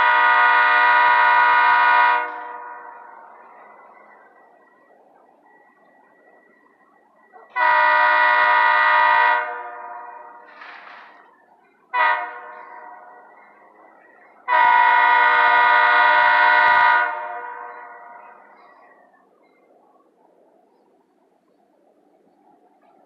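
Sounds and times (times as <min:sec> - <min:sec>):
locomotive air horn blasts: 0:00.0 - 0:03.3, 0:07.4 - 0:11.2, 0:11.9 - 0:13.3, 0:14.4 - 0:18.6.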